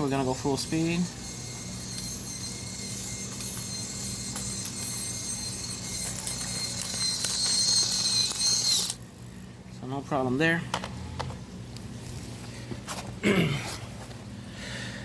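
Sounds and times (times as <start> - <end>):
small motor high whine: 0.0 - 9.7.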